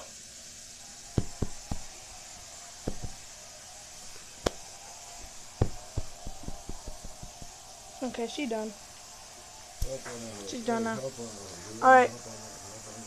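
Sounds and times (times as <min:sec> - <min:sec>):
faint steady hiss: 0:00.0 - 0:13.0
irregular knocks and clicks: 0:01.2 - 0:01.9, 0:02.8 - 0:03.3, 0:05.5 - 0:07.6.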